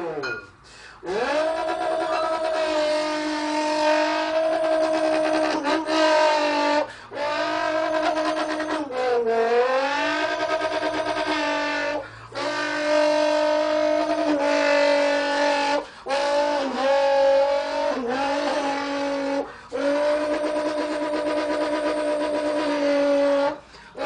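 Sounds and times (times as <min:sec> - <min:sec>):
boy imitating engine sounds: 0:00.0 - 0:24.0
boy breathing: 0:00.6 - 0:01.1, 0:06.9 - 0:07.2, 0:12.0 - 0:12.4, 0:15.8 - 0:16.1, 0:19.4 - 0:19.8, 0:23.6 - 0:24.0.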